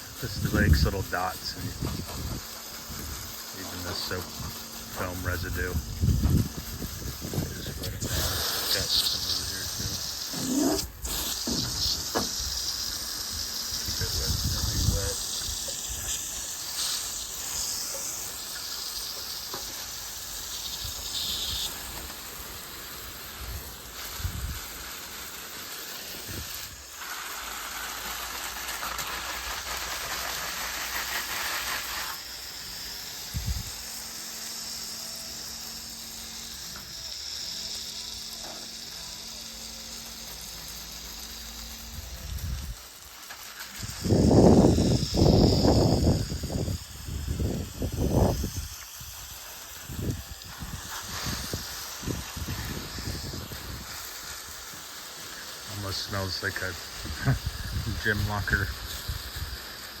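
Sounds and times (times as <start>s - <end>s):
water spraying from hose nozzle: 0.0s - 60.0s.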